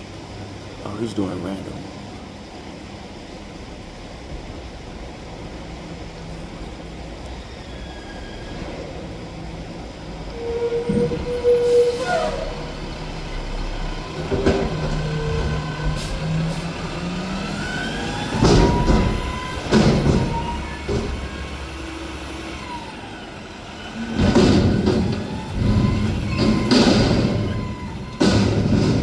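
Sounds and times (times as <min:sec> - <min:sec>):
diesel engine whining: 0:00.0 - 0:29.0
brief squeal: 0:10.3 - 0:12.9, 0:25.6 - 0:28.6
heavy metal bangs: 0:12.8 - 0:21.3, 0:24.1 - 0:29.0.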